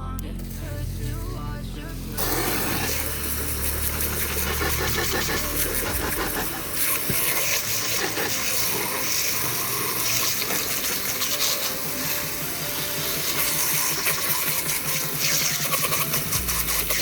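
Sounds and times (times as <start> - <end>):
low hum: 0.0 - 10.4
water spraying hiss: 0.2 - 17.0.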